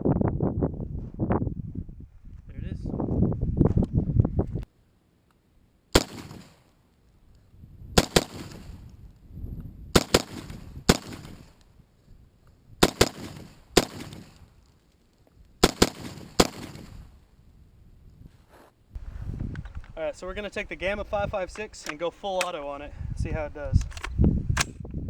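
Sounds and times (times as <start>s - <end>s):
rifle shots with echo: 20.6s - 22.9s, 23.8s - 24.8s.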